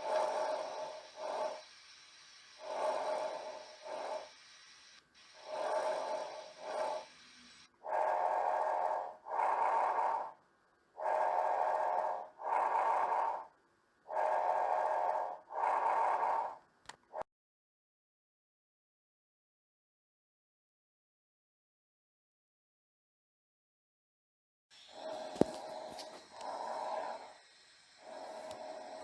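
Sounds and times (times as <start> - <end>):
lung breath sounds: 0.0 - 17.2, 24.8 - 29.0.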